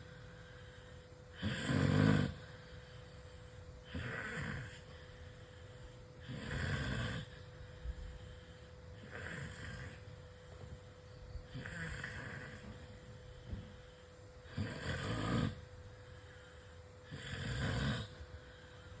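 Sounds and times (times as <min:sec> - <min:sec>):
person snoring loudly: 0:01.3 - 0:02.8, 0:03.8 - 0:05.1, 0:06.2 - 0:08.3, 0:09.0 - 0:10.2, 0:11.5 - 0:12.9, 0:14.4 - 0:15.7, 0:17.0 - 0:18.3.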